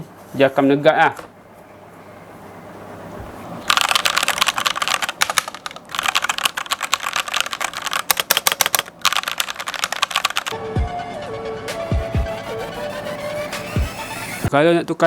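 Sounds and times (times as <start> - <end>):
mechanical keyboard typing: 3.7 - 10.6
music with steady tones: 10.5 - 14.5.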